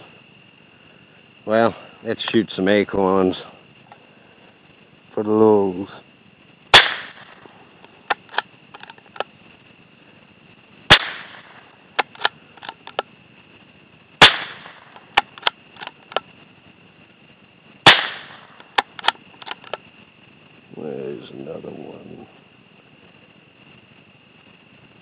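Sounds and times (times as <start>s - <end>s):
rifle shots: 6.7s - 7.5s, 10.9s - 12.3s, 14.2s - 15.3s, 17.8s - 19.2s.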